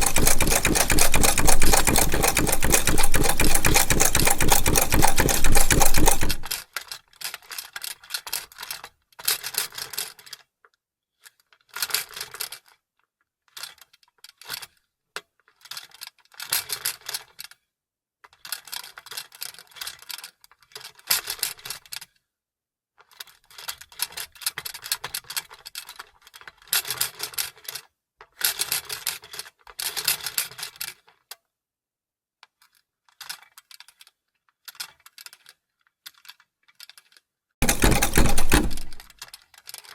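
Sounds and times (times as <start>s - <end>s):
sewing machine running: 0.0s - 6.5s, 37.6s - 39.1s
needle mechanism clicking: 0.0s - 6.6s, 37.6s - 39.1s.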